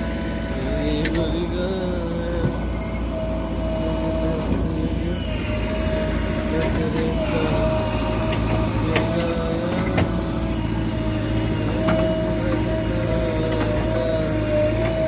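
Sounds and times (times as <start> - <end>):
excavator diesel engine running: 0.0 - 15.0
whine shifting in pitch: 0.0 - 15.0.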